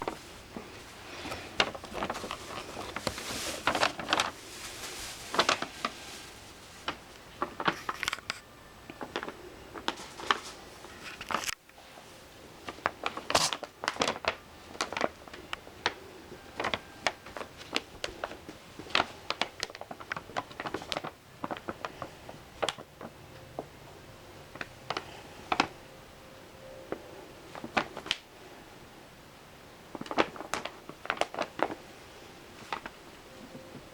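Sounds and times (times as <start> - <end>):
paper bag crinkling: 0.0 - 23.7, 24.5 - 25.8, 27.5 - 28.3, 29.9 - 33.9.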